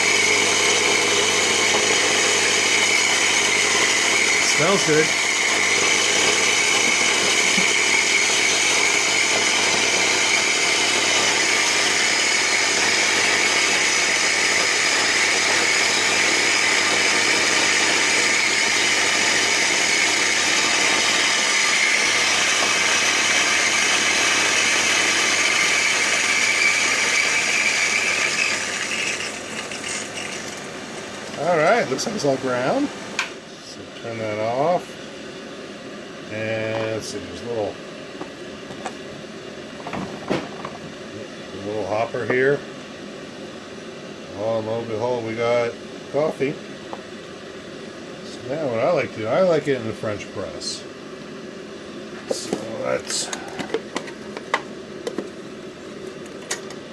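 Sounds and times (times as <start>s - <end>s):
electric coffee grinder running: 0.0s - 33.3s, 52.2s - 56.9s.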